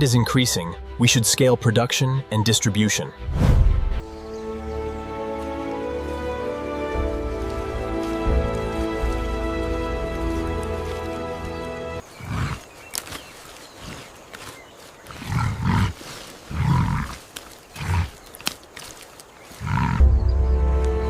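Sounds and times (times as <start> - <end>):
music: 0.0 - 12.0, 19.8 - 21.0
camel calling: 11.4 - 13.1, 15.0 - 18.2, 19.5 - 20.1.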